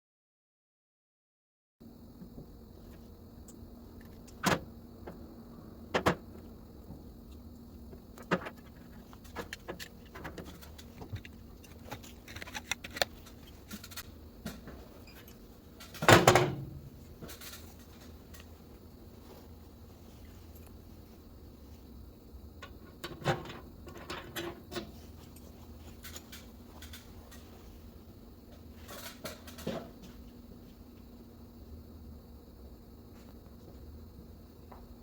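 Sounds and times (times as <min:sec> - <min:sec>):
clicks of small hard parts handled: 0:09.2 - 0:14.0.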